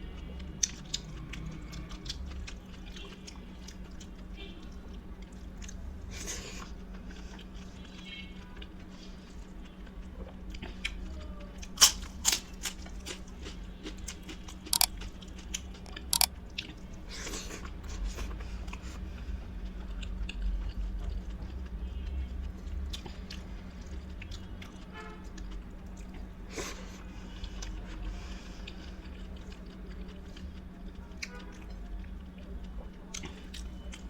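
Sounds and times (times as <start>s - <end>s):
faint steady hum: 0.0s - 34.0s
person chewing: 0.2s - 34.0s
crunching bites: 11.6s - 16.3s.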